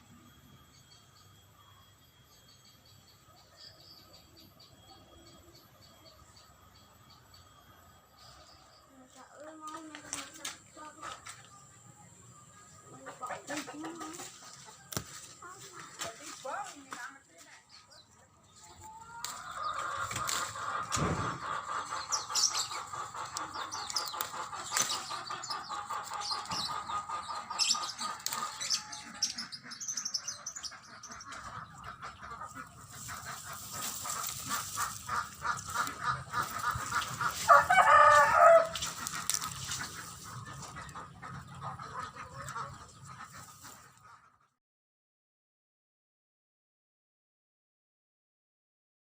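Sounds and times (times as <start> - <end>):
chickens clucking: 2.8 - 44.6.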